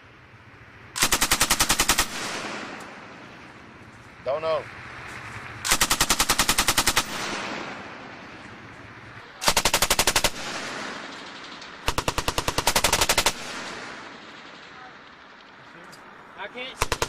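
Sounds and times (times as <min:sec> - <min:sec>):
machine gun automatic fire: 0:01.0 - 0:03.1, 0:05.6 - 0:08.2, 0:09.4 - 0:15.6, 0:16.8 - 0:17.0
gunfire echo: 0:01.0 - 0:03.8, 0:05.6 - 0:15.6, 0:16.7 - 0:17.0.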